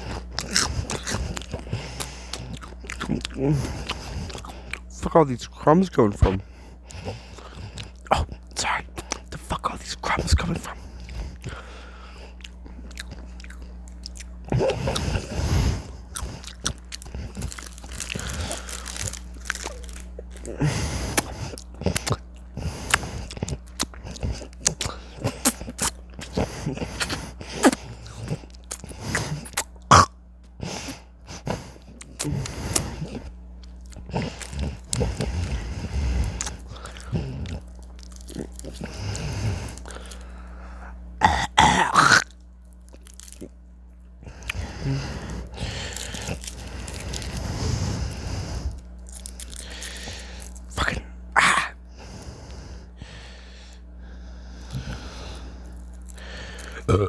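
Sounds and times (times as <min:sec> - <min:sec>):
mouth sounds: 0:00.0 - 0:07.1, 0:07.8 - 0:11.1, 0:14.5 - 0:30.1, 0:41.2 - 0:42.3
chewing crunchy chips: 0:00.0 - 0:57.0
faint electrical hum: 0:00.0 - 0:57.0.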